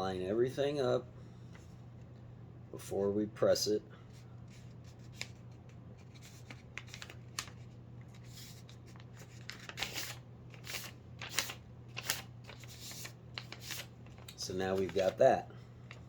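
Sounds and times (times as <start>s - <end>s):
steady low hum: 0.0s - 16.0s
paper rustling and folding: 4.1s - 16.0s.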